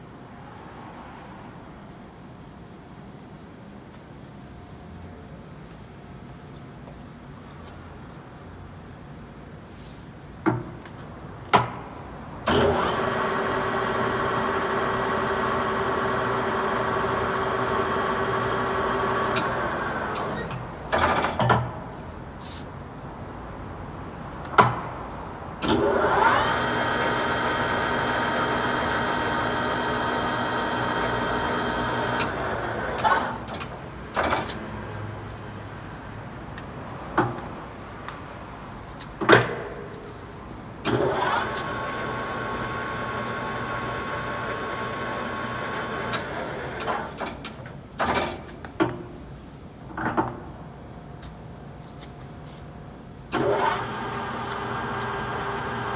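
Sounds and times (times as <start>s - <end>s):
sharp clicks and knocks: 46.2s - 49.1s.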